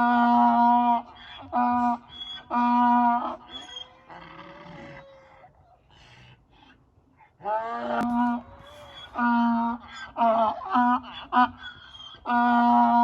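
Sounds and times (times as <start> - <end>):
donkey braying: 7.4 - 13.0.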